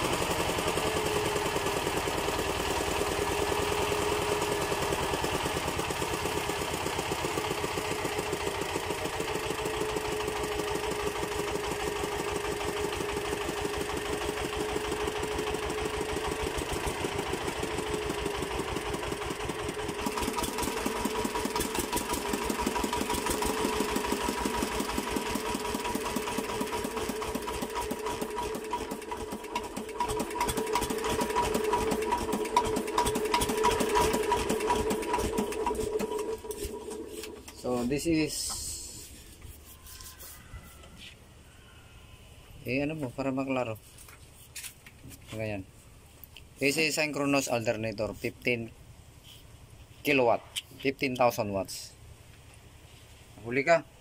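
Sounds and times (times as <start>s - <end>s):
small generator engine running: 0.0s - 39.5s.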